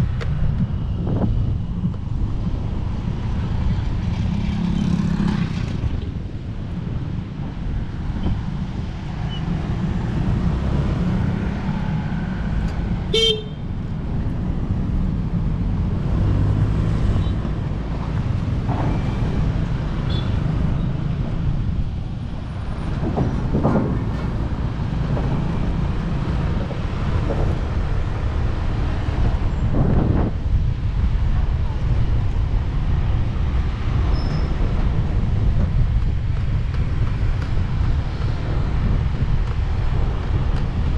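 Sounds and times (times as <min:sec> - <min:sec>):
motorcycle engine and wind rumble: 0:00.0 - 0:40.9
motorcycle horn toot: 0:13.1 - 0:13.6.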